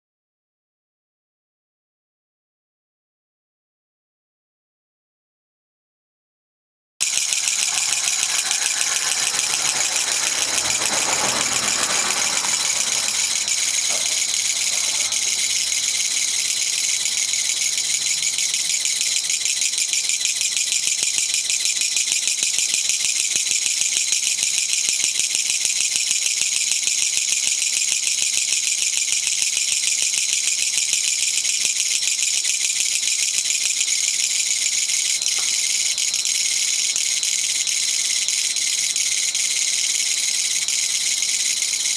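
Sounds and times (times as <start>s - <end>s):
katydid rattling buzz: 7.0s - 26.5s, 29.0s - 41.9s.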